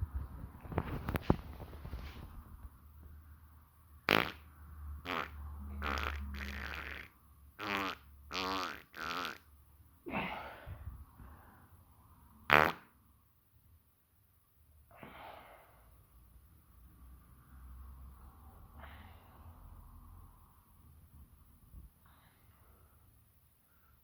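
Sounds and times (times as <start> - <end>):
person farting: 4.1 - 9.5, 12.5 - 12.9.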